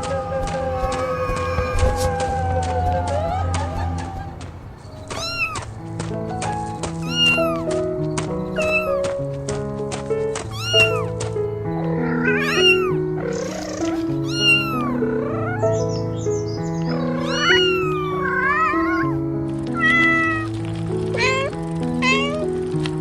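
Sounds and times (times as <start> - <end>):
slow background music: 0.0 - 23.0
cat meowing: 5.1 - 5.7, 7.0 - 7.7, 8.5 - 9.1, 10.4 - 11.2, 11.8 - 16.0, 16.9 - 20.5, 21.1 - 22.5.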